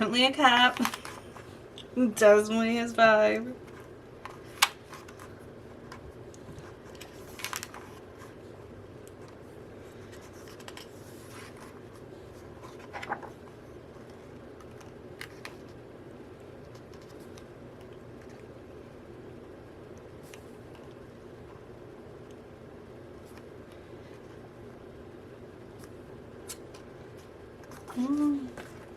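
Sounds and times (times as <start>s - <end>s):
faint steady hum: 0.0s - 28.9s
paper scraping and rustling: 9.9s - 15.8s.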